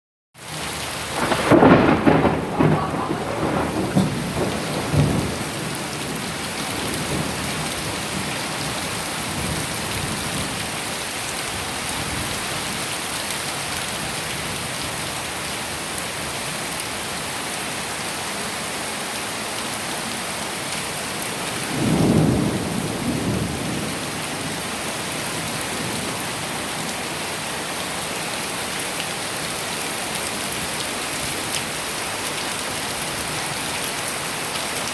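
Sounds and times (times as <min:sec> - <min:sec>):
steady rain: 0:00.4 - 0:34.9
thunder rolling: 0:01.2 - 0:10.2, 0:21.7 - 0:24.6.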